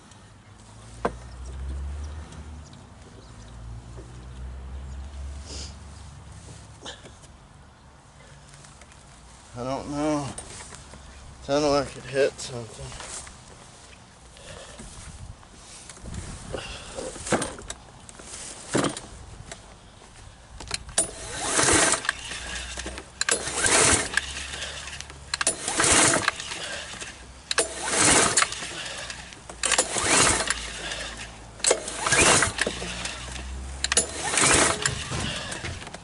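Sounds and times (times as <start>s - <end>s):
recoil starter cord pulls: 20.6s - 36.0s.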